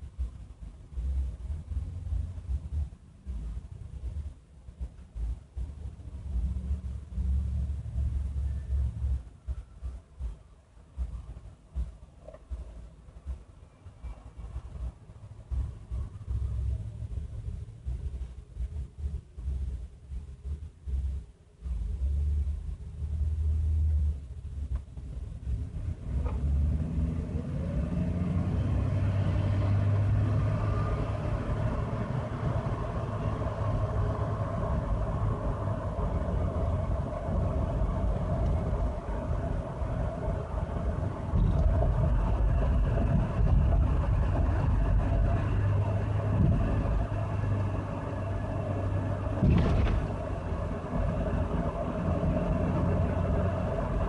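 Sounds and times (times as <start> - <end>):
engine whine: 0.0 - 54.0
truck engine rumbling: 0.0 - 54.0.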